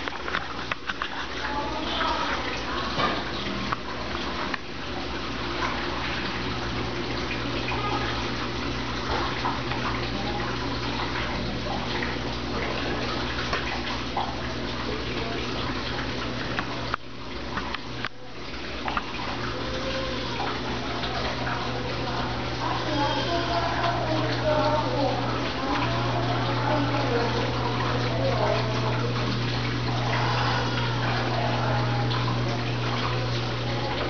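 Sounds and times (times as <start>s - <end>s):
washing machine motor hum: 0.0s - 34.0s
water churning in washing machine: 0.0s - 34.0s.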